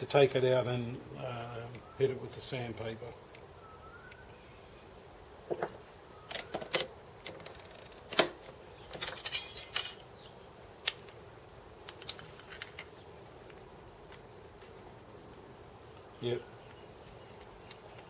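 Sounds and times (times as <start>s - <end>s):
small metal parts clinking: 8.8s - 10.1s, 11.9s - 13.0s, 17.3s - 18.0s.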